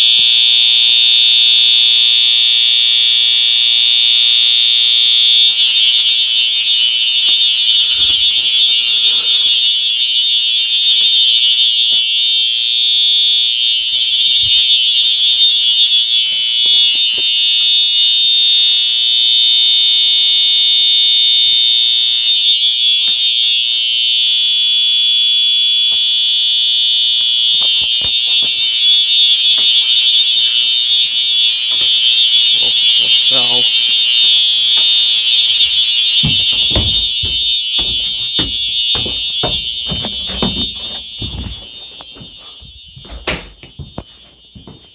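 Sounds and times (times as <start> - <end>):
high-pitched electronic horn: 0.0 - 11.8, 27.4 - 42.7.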